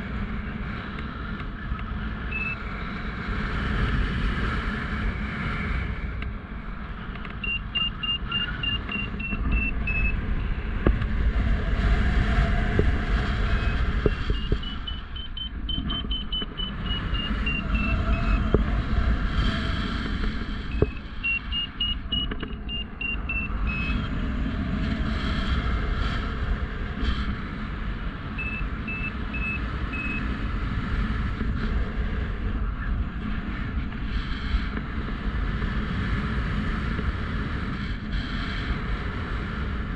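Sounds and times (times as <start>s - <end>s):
wind buffeting microphone: 0.0s - 39.9s
variometer beeping: 2.3s - 2.6s, 7.2s - 10.6s, 13.6s - 18.5s, 20.7s - 24.0s, 28.4s - 30.3s.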